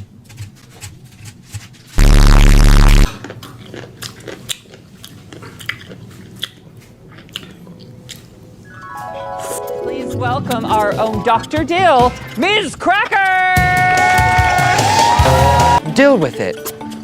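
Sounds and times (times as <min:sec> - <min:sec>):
loud distorted buzzing burst: 0:02.0 - 0:03.1
close chewing and crunching: 0:03.1 - 0:08.6.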